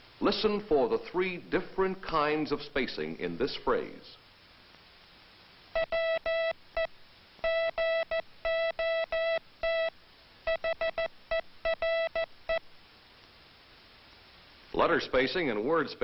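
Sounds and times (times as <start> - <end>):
morse code beeps: 5.8 - 9.9, 10.5 - 12.6.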